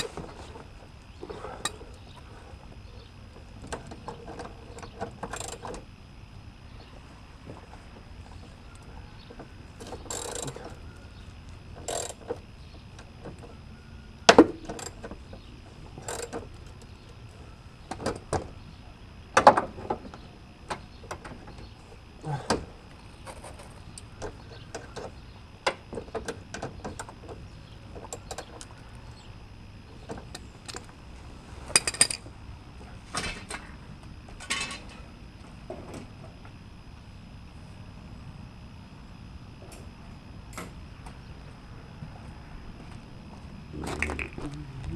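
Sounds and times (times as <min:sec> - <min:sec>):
faint steady hum: 0:00.0 - 0:44.9
hand tools clanking on metal: 0:34.4 - 0:35.0.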